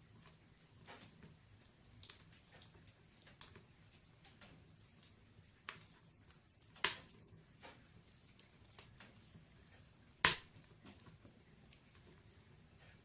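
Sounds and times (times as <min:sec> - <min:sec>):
wood fire crackling: 0:00.0 - 0:13.0
sharp fire pops: 0:06.7 - 0:07.8, 0:10.2 - 0:11.0.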